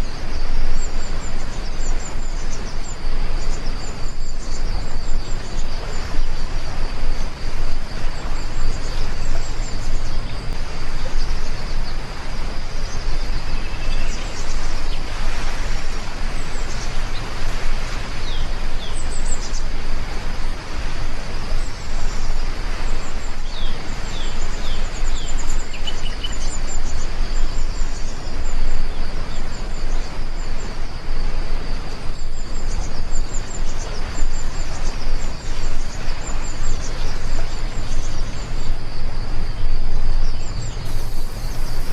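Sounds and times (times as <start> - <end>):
bird chirps: 40.4 - 41.9
heavy rainfall: 40.8 - 41.9.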